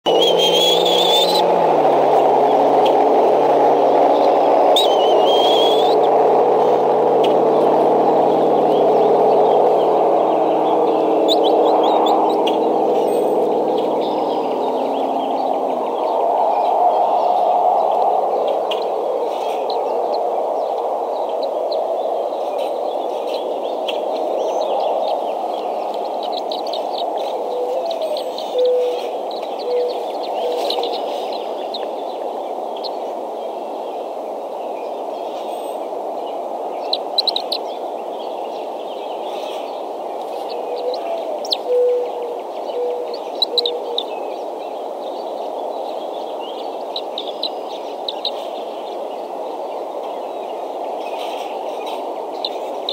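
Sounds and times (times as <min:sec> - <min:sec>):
birds chirping: 0:00.0 - 0:52.9
steady outdoor rushing noise: 0:00.0 - 0:52.9.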